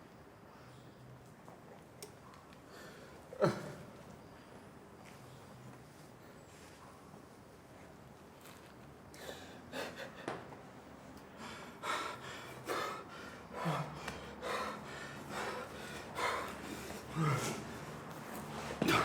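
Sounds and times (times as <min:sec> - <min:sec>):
person gasping breaths: 0:11.3 - 0:19.0.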